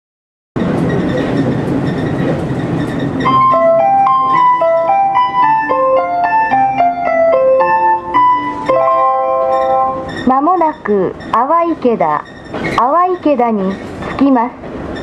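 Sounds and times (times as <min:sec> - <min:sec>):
diesel train rumbling: 0:00.6 - 0:15.0
chime melody over train speaker: 0:03.2 - 0:11.8.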